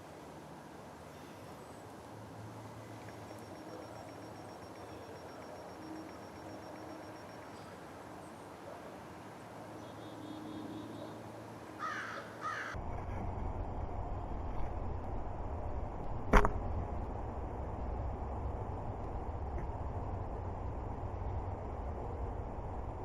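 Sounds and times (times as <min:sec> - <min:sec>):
crow cawing: 0:11.8 - 0:12.8
low rumble: 0:12.8 - 0:23.0.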